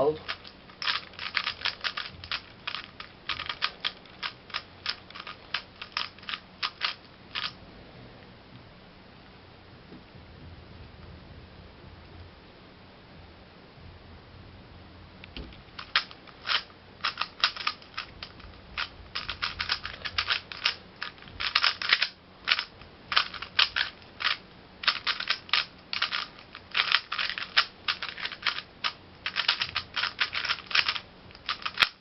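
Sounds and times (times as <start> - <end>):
puzzle cube plastic clicks: 0.2 - 7.6, 15.3 - 32.0.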